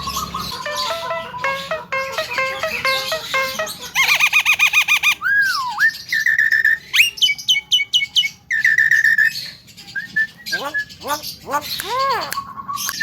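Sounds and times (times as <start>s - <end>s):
bird whistling: 0.0s - 13.0s.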